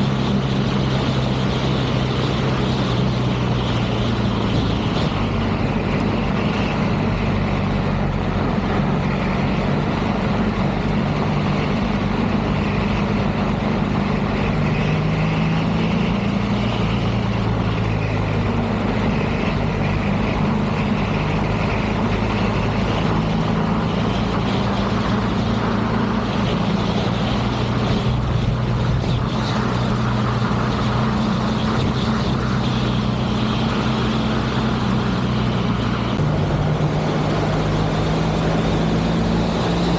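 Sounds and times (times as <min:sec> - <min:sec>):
motorcycle engine running: 0:00.0 - 0:39.9
wind rush: 0:21.4 - 0:39.9.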